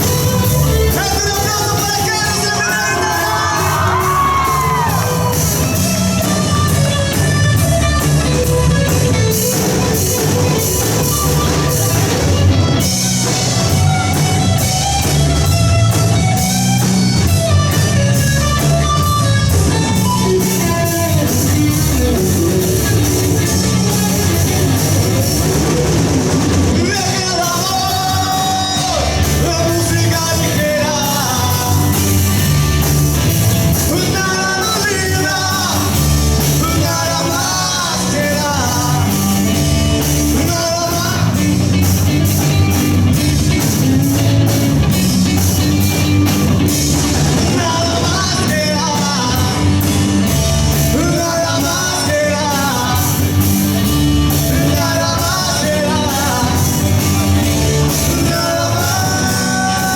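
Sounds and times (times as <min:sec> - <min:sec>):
bass guitar: 0:00.0 - 0:59.9
drum kit: 0:00.0 - 0:59.9
electric guitar: 0:00.0 - 0:59.9
person singing: 0:00.4 - 0:05.4, 0:19.8 - 0:25.5, 0:26.7 - 0:32.6, 0:33.6 - 0:41.7, 0:47.2 - 0:59.9.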